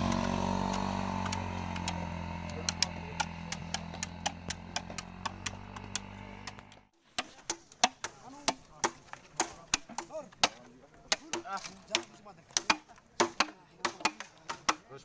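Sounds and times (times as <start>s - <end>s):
rapid sharp clicks: 0.6s - 6.8s.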